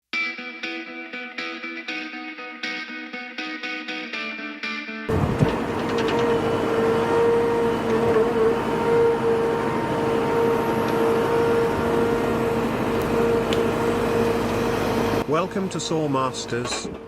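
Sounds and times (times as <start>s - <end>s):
machine engine running with whine: 5.1s - 17.0s.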